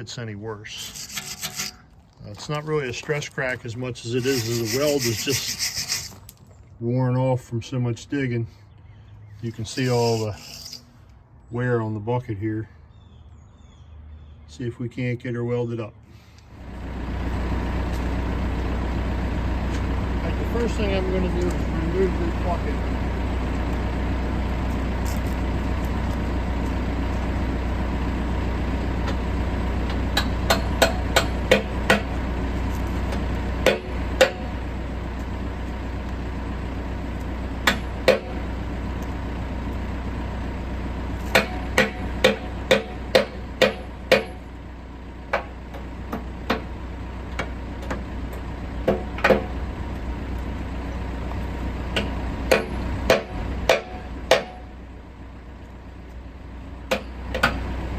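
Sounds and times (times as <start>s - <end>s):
diesel engine idling: 16.2s - 57.9s.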